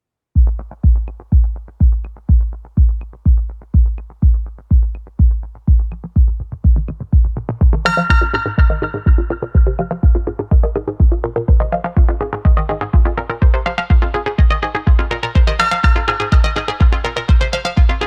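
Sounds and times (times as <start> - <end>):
kick drum beat: 0.4 - 18.0
synth chords: 0.4 - 18.0.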